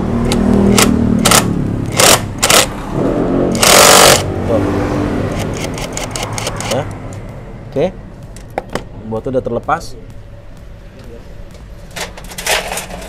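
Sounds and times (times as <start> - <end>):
impact wrench hammering: 0.2 - 2.8, 3.6 - 4.3.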